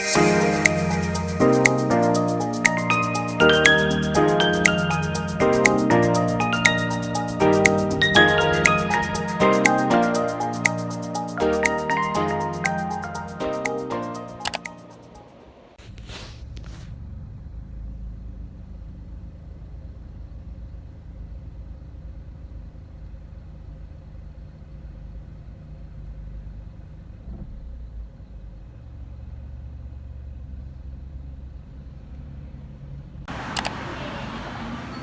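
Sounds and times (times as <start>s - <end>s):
music: 0.0s - 15.6s
car engine and road rumble: 15.4s - 35.0s.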